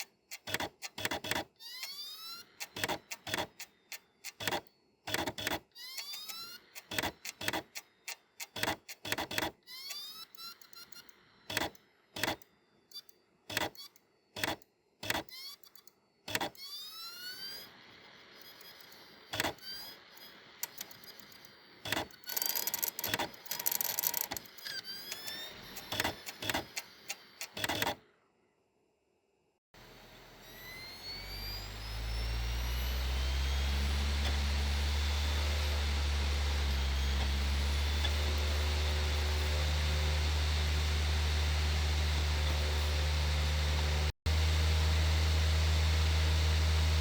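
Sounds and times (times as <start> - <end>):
disc spinning up whine: 29.8 - 44.2
whirring rush of spinning disc: 30.6 - 44.2.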